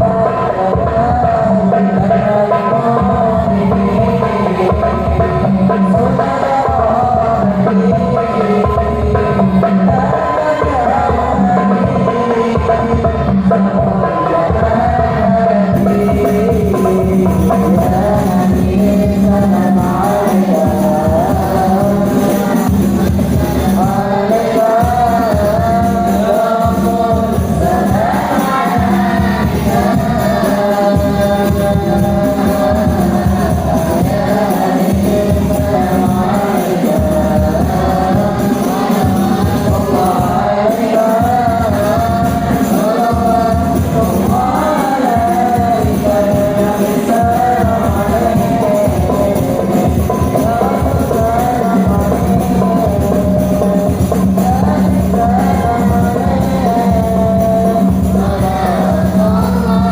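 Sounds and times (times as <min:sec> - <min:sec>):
child singing devotional song: 0:00.0 - 0:59.9
hand percussion: 0:00.0 - 0:59.9
musical accompaniment: 0:00.0 - 0:59.9.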